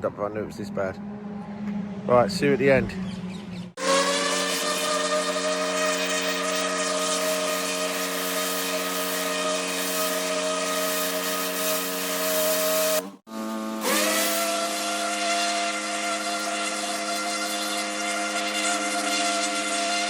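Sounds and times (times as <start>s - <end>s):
water jet hissing on brick: 3.8s - 13.1s
pressure washer hum: 3.8s - 20.0s.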